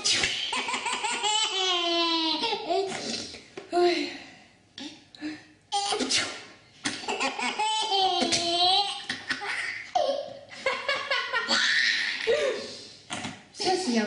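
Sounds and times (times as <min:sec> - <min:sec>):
baby laughing: 0:00.2 - 0:03.1, 0:06.8 - 0:12.5.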